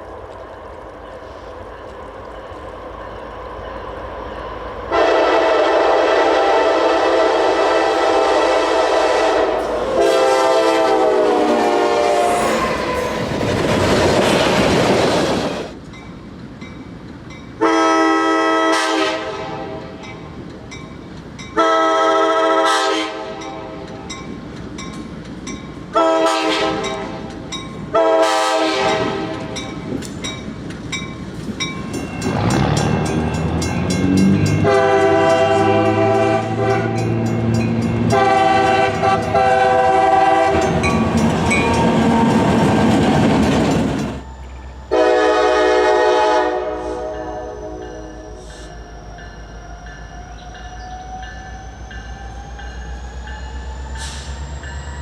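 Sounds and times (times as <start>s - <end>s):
rumble of train passing: 0.0s - 55.0s
locomotive air horn blasts: 4.9s - 13.2s, 17.6s - 20.0s, 21.6s - 23.8s, 26.0s - 27.2s, 27.9s - 29.6s, 34.5s - 37.2s, 38.0s - 40.9s, 44.9s - 48.5s.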